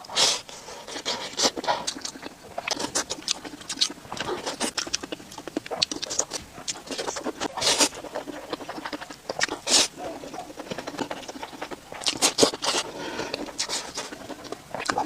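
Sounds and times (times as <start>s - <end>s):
wet chewing and mouth smacking: 0.0s - 15.0s.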